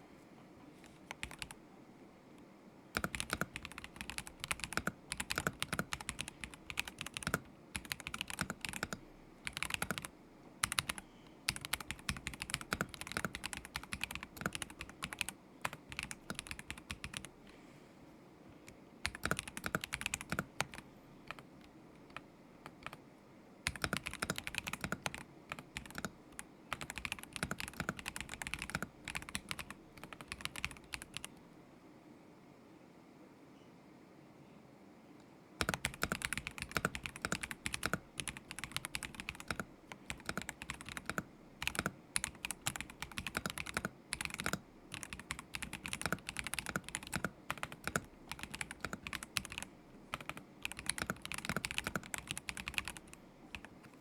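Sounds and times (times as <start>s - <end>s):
typing on mechanical keyboard: 1.1s - 1.6s, 3.0s - 17.3s, 19.0s - 23.0s, 23.6s - 31.3s, 35.6s - 54.0s.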